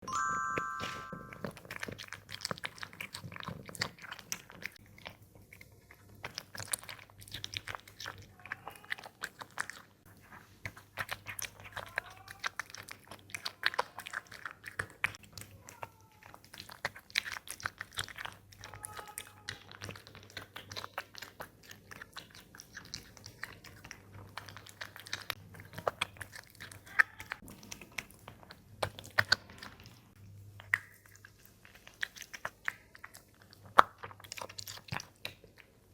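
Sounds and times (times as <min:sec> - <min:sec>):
cat chewing food: 0:01.4 - 0:35.9.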